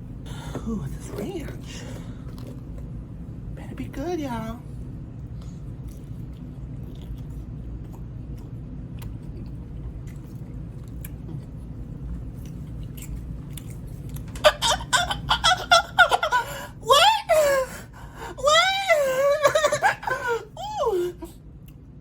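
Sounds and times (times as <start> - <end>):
low steady hum: 0.0 - 22.0
quiet chewing: 1.1 - 3.2, 5.2 - 14.4, 21.5 - 22.0.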